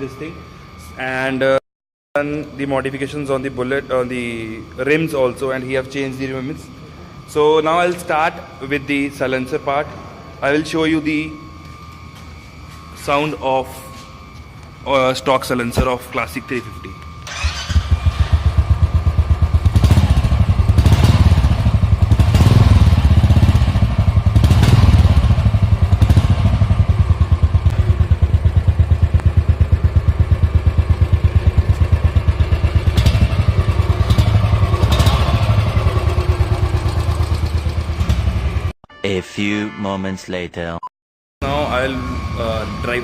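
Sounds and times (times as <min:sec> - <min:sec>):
motorcycle engine thumping: 0:18.5 - 0:38.6.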